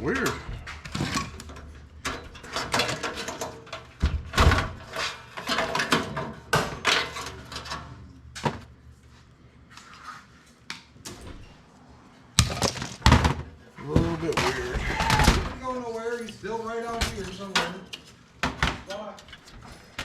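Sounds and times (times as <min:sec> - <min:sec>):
computer parts clanking and clicking: 0:00.0 - 0:08.6.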